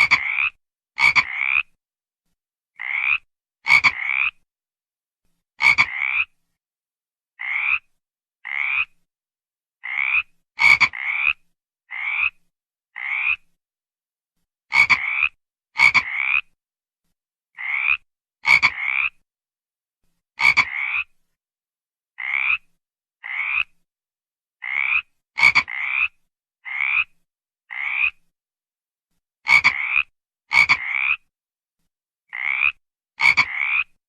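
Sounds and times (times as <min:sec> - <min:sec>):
frog calling: 0:00.0 - 0:01.8, 0:02.8 - 0:04.4, 0:05.6 - 0:06.4, 0:07.4 - 0:09.0, 0:09.8 - 0:12.4, 0:13.0 - 0:13.4, 0:14.7 - 0:16.6, 0:17.6 - 0:19.2, 0:20.4 - 0:21.1, 0:22.2 - 0:23.7, 0:24.6 - 0:27.1, 0:27.7 - 0:28.2, 0:29.5 - 0:31.2, 0:32.3 - 0:33.9.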